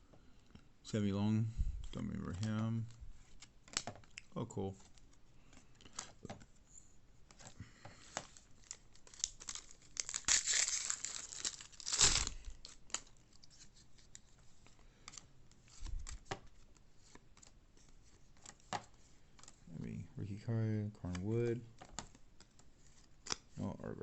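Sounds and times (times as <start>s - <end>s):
foil wrapper crinkling: 8.4s - 13.2s
foil wrapper tearing: 8.6s - 13.1s.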